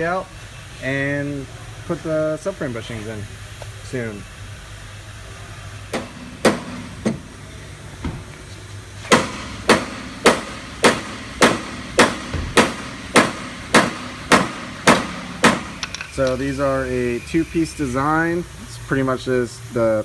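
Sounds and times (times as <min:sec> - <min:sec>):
hammer blows on metal: 0:09.1 - 0:16.4.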